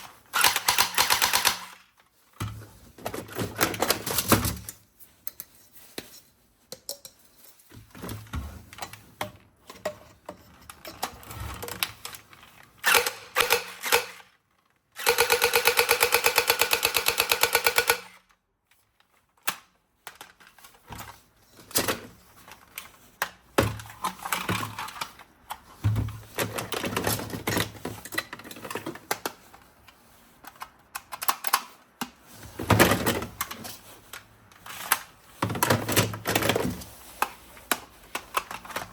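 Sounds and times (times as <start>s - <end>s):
plastic toy gun clicks: 0.0s - 1.8s, 12.8s - 14.3s, 15.0s - 18.2s
toy gun rapid burst of fire: 0.4s - 1.8s, 12.8s - 14.3s, 15.0s - 18.2s.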